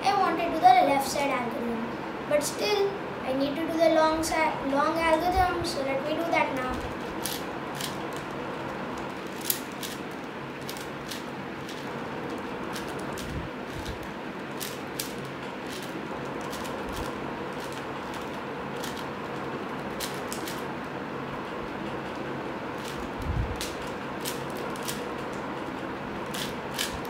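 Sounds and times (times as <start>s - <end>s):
steady background hiss: 0.0s - 27.0s
plastic puzzle cube clicking: 7.2s - 8.0s, 9.4s - 10.0s, 18.8s - 19.0s, 26.3s - 27.0s.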